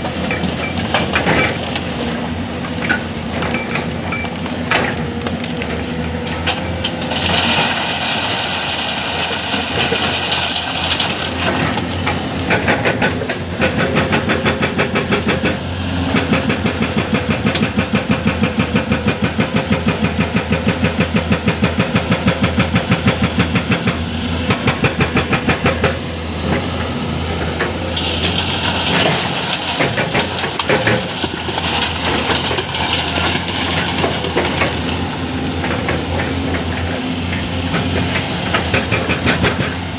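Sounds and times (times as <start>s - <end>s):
excavator diesel engine running: 0.0s - 39.9s
hydraulic breaker hammering rock: 2.7s - 39.9s.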